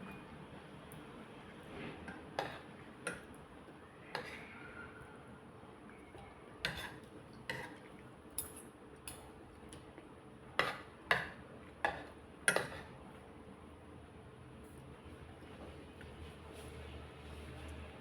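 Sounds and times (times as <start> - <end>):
utensils clinking on a plate: 6.6 - 8.8, 10.6 - 12.9.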